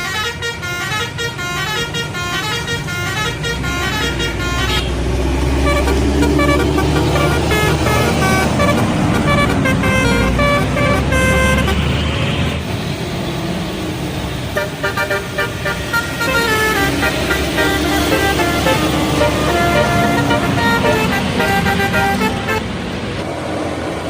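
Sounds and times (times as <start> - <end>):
multi-tone bus horn melody: 0.0 - 12.6, 14.5 - 23.0
bus engine rumble: 0.0 - 24.0.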